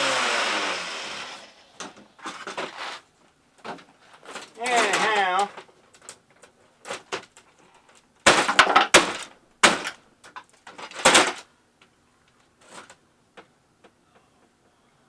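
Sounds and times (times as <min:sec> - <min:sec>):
plastic cracking and clattering: 0:03.6 - 0:11.5, 0:12.4 - 0:13.0.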